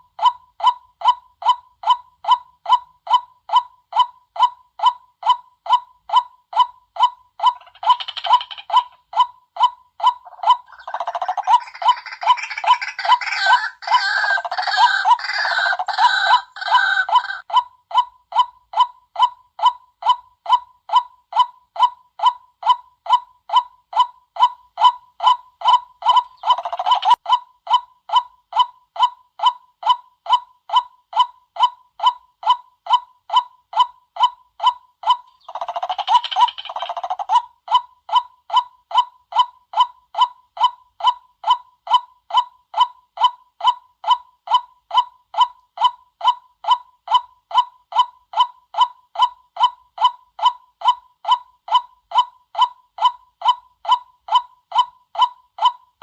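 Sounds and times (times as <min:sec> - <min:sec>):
chattering bird calls: 0:07.5 - 0:09.0, 0:10.2 - 0:17.4, 0:26.0 - 0:27.2, 0:35.2 - 0:37.4
waterhen kwak call: 0:10.2 - 0:17.4.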